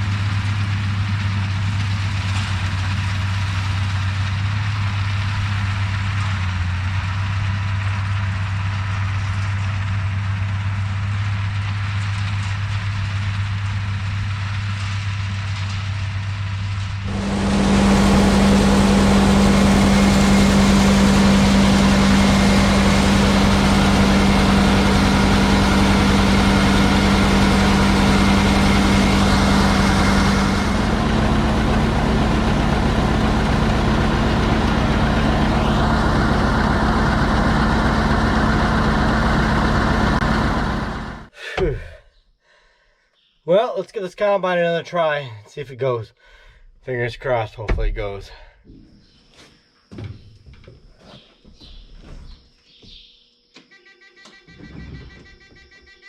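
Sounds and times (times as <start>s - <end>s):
swather engine running: 16.8s - 41.3s.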